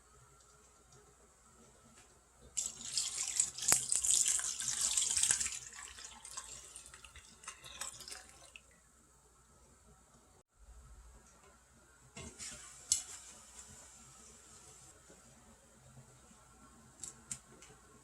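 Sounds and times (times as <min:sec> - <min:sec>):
tap water running into sink: 0:02.6 - 0:08.6.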